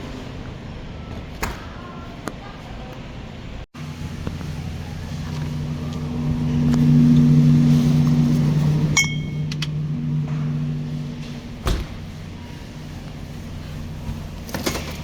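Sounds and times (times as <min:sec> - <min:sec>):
steady low hum: 0:03.2 - 0:15.0
sharp ringing clink: 0:09.0 - 0:09.5.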